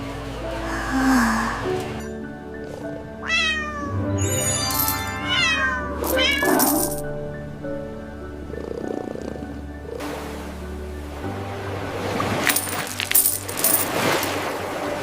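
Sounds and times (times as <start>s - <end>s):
background music: 0.0s - 15.0s
cat meowing: 3.2s - 4.0s, 5.2s - 6.8s.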